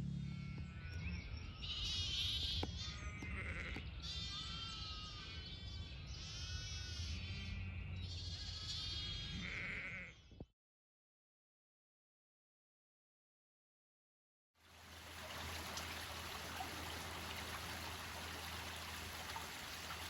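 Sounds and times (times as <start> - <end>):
steady low rumble: 0.0 - 1.3
sheep bleating: 0.2 - 10.2.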